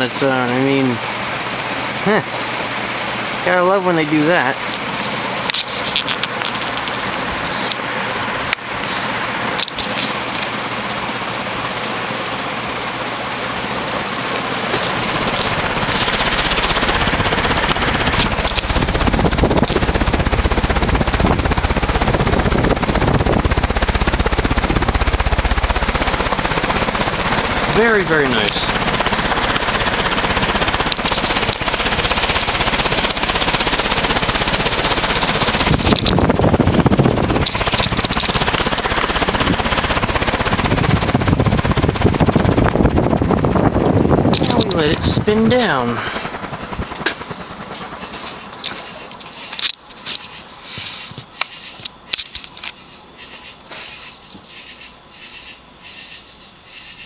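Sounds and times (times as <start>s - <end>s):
ceiling fan running: 0.0s - 57.0s
wind buffeting microphone: 14.7s - 48.4s.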